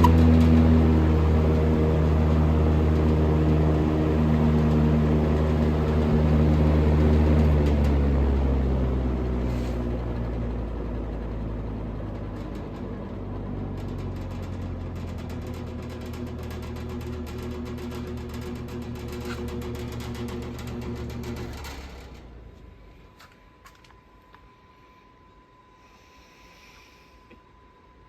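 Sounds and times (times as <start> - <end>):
rush of air from fan blades: 0.0 - 12.2
box fan motor humming: 0.0 - 24.2.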